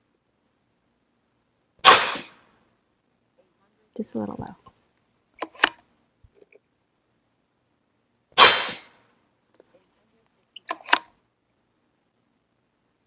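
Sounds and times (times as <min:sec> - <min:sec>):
air rifle shot: 0:01.8 - 0:02.5, 0:08.4 - 0:09.0.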